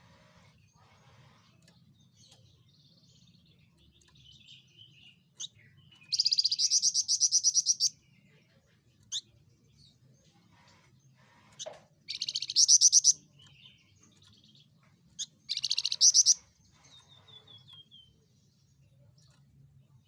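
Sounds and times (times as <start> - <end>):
bird chattering: 5.4 - 7.9, 11.6 - 13.5, 15.2 - 16.4
rapid bird trill: 6.1 - 7.9, 12.1 - 13.2, 15.2 - 17.7.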